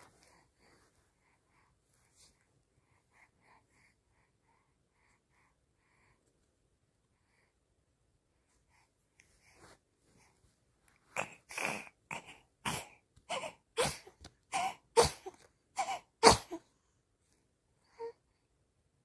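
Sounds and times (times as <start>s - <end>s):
baby sneezing: 11.2s - 16.6s.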